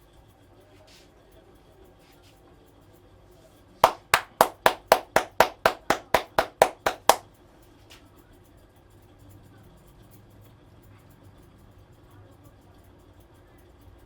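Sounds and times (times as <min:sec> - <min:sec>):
rapid hand strikes on head: 0:03.8 - 0:07.2.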